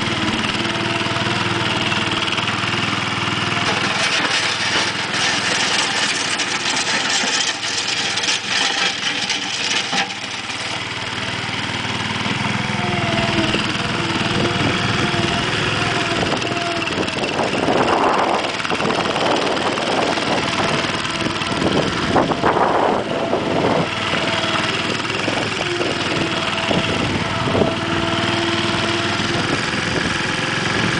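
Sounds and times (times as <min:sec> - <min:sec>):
small engine running: 0:00.0 - 0:30.9.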